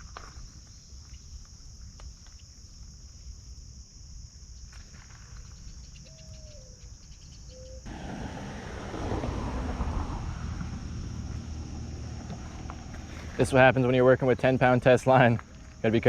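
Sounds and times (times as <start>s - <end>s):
insects chirping: 0.0s - 16.0s
low rumble: 7.9s - 13.4s.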